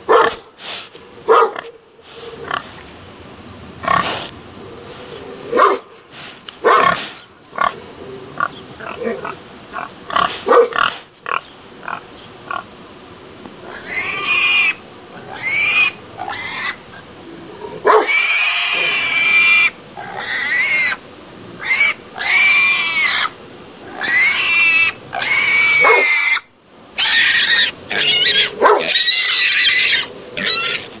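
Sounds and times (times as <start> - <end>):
pigs squealing: 3.7 - 4.3, 6.8 - 12.7, 13.6 - 21.0, 21.6 - 31.0
pig grunts: 3.8 - 4.3, 6.8 - 12.7.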